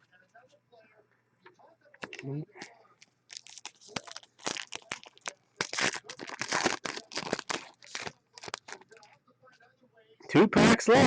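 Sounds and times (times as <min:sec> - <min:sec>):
cards rustling: 0:03.0 - 0:09.1
foil wrappers crinkling and tearing: 0:03.3 - 0:09.1.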